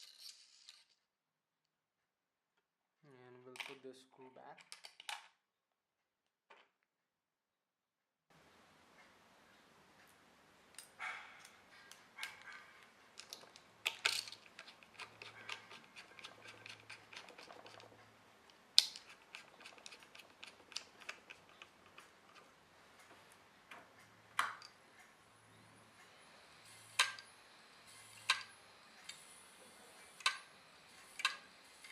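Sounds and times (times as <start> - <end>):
screwdriver and metal parts clicking: 10.8 - 18.0, 18.8 - 22.5.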